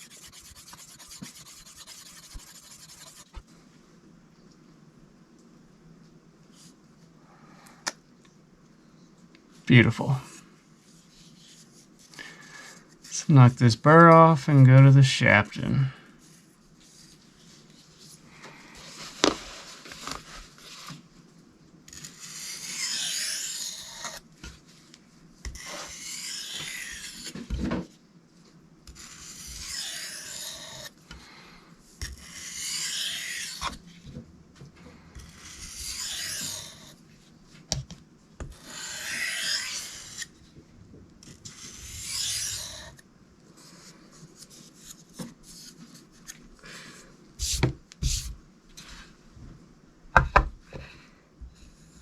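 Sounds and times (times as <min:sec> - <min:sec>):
knife scraping abrasive surface: 0:00.0 - 0:03.3, 0:21.9 - 0:24.2, 0:25.6 - 0:27.4, 0:29.0 - 0:30.9, 0:32.0 - 0:33.8, 0:35.2 - 0:37.0, 0:38.6 - 0:40.3, 0:41.4 - 0:43.0.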